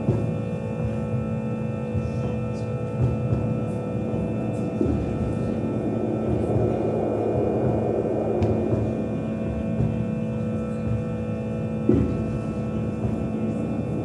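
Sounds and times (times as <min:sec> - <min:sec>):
droning experimental music: 0:00.0 - 0:14.0.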